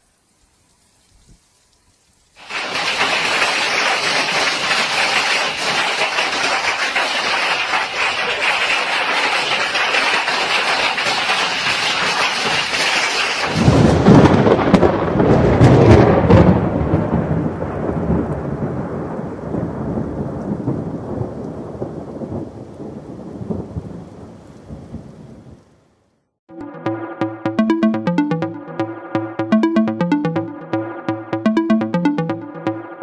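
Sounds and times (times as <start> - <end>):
heavy rain hissing: 2.4 - 4.4.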